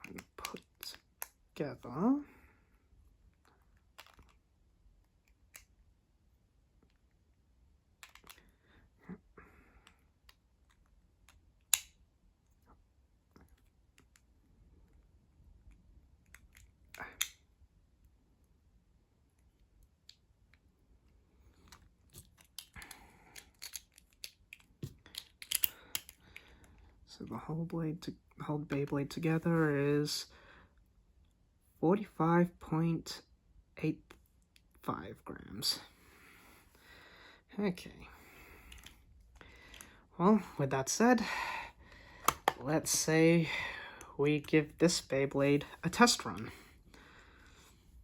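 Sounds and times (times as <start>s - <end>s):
plastic parts clicking together: 3.8s - 4.4s, 8.0s - 8.5s, 9.8s - 12.0s, 21.5s - 26.5s, 42.2s - 42.6s.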